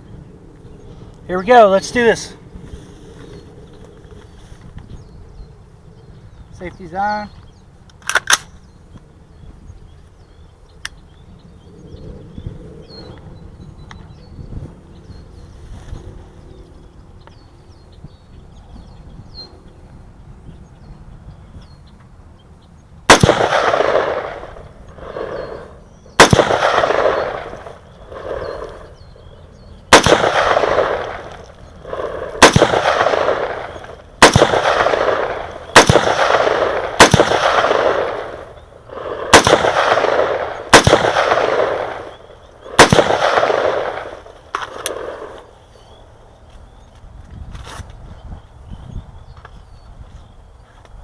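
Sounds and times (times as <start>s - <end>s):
rifle shots with echo: 23.1s - 29.3s, 29.9s - 45.5s.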